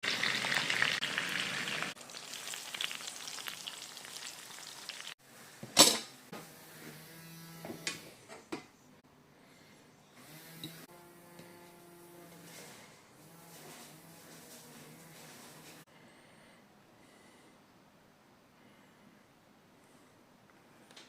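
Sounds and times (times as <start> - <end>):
food sizzling in a pan: 0.0 - 5.2.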